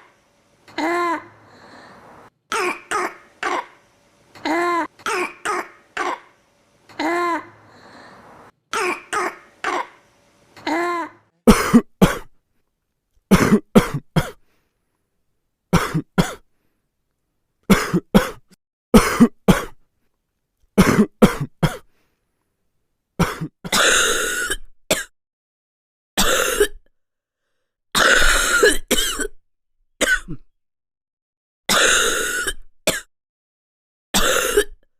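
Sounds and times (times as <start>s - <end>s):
young child coughing: 2.5s - 3.8s, 4.4s - 6.3s, 8.7s - 10.0s, 10.6s - 12.3s, 13.3s - 14.4s, 15.8s - 16.4s, 17.7s - 18.4s, 19.0s - 19.8s, 20.8s - 21.8s, 23.2s - 25.1s, 28.0s - 29.4s, 30.0s - 30.5s, 31.7s - 33.1s, 34.2s - 34.8s.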